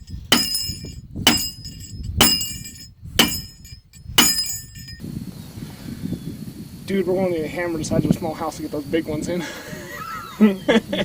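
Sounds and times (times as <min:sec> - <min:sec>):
hammer striking steel: 0:00.0 - 0:05.0.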